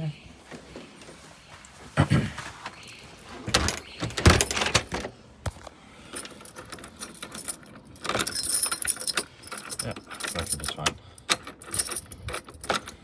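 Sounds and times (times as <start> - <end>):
keys jangling: 2.8 - 5.1, 6.1 - 13.0.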